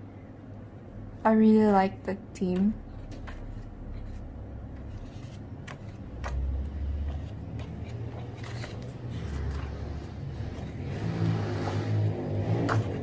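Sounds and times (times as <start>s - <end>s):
motor vehicle rumbling: 6.2s - 13.0s.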